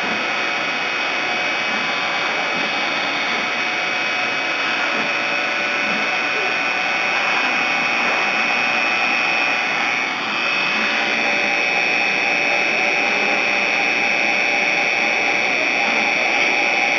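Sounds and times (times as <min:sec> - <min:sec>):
machine motor whine: 0:00.0 - 0:16.9.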